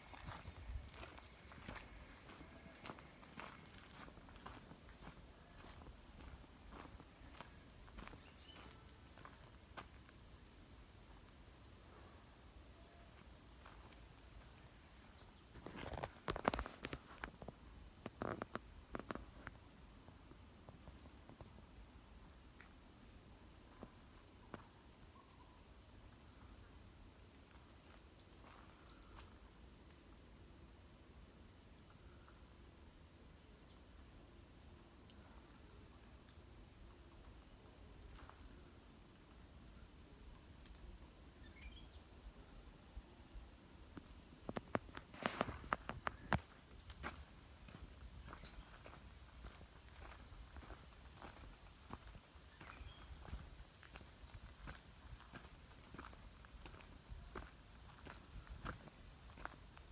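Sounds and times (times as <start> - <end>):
footsteps: 0.0 - 9.4, 44.6 - 59.6
insects chirring: 0.0 - 59.9.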